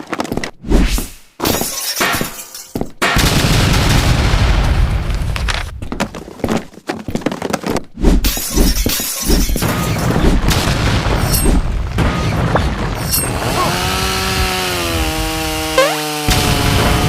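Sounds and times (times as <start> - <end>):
glass breaking: 1.4 - 3.2
held pitched tone: 15.8 - 16.1.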